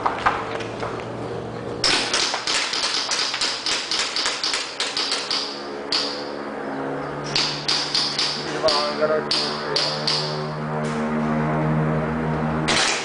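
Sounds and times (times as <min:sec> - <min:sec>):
airsoft pistols firing: 0:01.8 - 0:06.2, 0:12.7 - 0:13.0.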